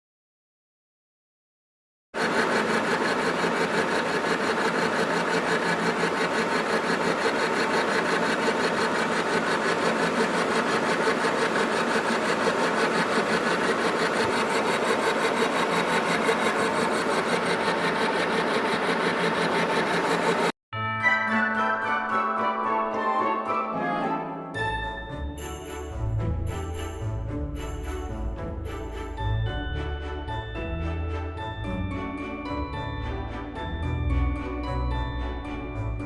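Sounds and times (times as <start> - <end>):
fast even ticking: 2.2 - 20.5
machine tool cutting metal: 2.2 - 20.5.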